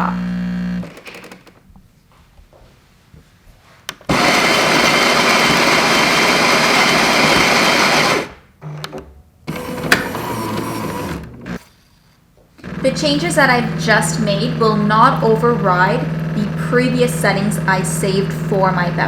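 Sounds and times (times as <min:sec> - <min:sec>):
coffee grinder grinding beans: 0:04.1 - 0:08.4, 0:09.5 - 0:11.6
mechanical clunks: 0:08.8 - 0:11.5.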